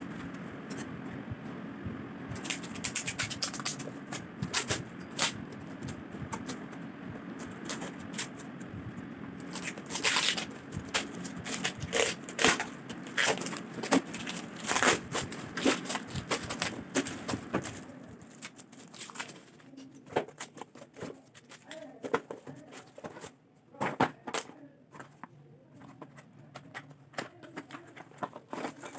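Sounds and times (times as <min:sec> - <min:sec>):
packaging crinkling and clicking: 0:02.4 - 0:06.6, 0:09.4 - 0:23.3.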